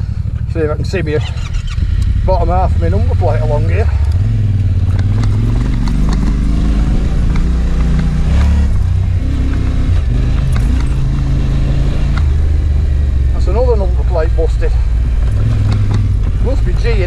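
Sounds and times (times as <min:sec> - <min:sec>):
dirt bike engine revving: 0:00.9 - 0:17.0
small clicks and knocks: 0:15.5 - 0:16.9.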